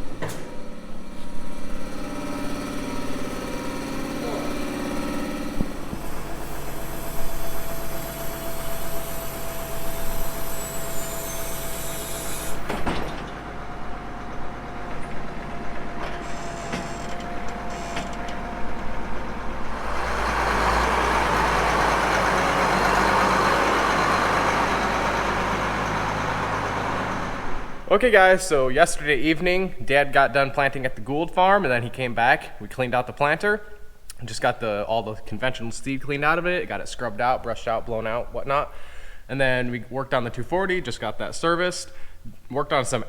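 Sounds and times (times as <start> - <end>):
machine whine: 0.0 - 27.9.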